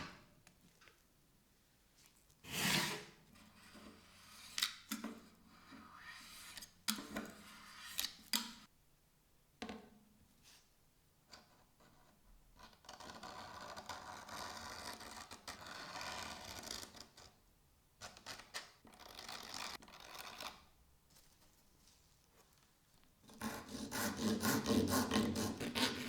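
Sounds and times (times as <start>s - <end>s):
scraping on a knife: 5.6s - 8.3s.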